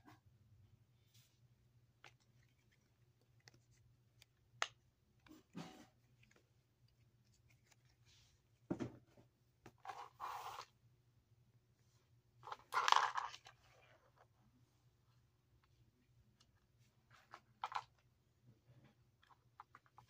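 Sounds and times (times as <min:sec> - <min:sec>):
rustling slide: 0:09.9 - 0:10.8.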